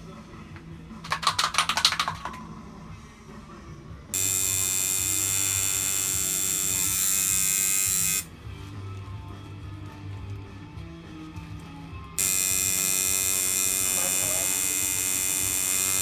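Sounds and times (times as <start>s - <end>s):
tattoo machine rapid clicks: 1.1s - 2.3s, 4.2s - 8.3s, 12.2s - 16.0s
tattoo machine electric buzz: 4.1s - 8.3s, 12.2s - 16.0s.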